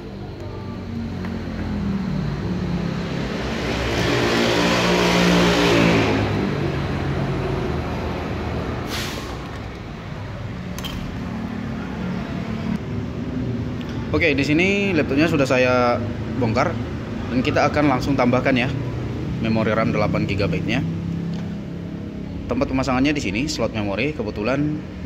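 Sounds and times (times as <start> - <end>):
vehicle engine passing by: 0.8 - 9.6.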